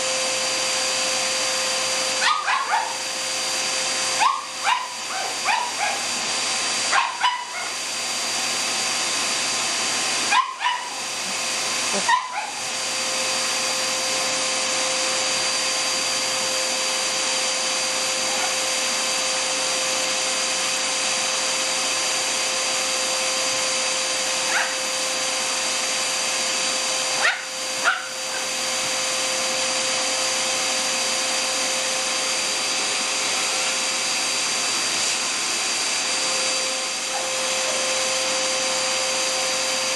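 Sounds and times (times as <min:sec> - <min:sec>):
vacuum cleaner motor running: 0:00.0 - 0:39.9
small dog yipping: 0:02.2 - 0:03.0, 0:04.2 - 0:06.1, 0:06.9 - 0:07.8, 0:10.3 - 0:12.7, 0:18.3 - 0:18.6, 0:24.5 - 0:24.9, 0:27.2 - 0:28.5.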